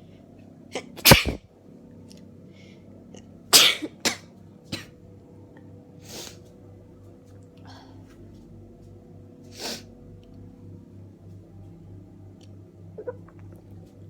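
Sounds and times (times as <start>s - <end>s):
woman sneezing: 0.8s - 1.4s, 3.6s - 4.2s.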